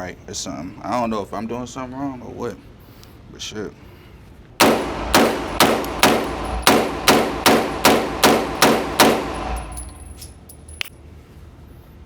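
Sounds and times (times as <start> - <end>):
carbine gunshots: 4.6 - 10.0.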